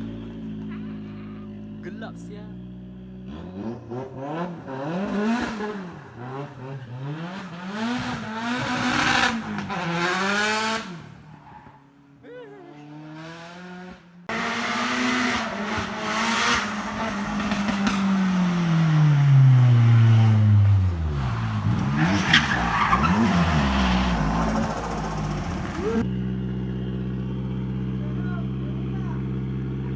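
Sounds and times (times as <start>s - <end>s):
turbo car engine revving: 0.0s - 11.3s, 12.7s - 29.9s
tyre squeal: 21.1s - 26.0s.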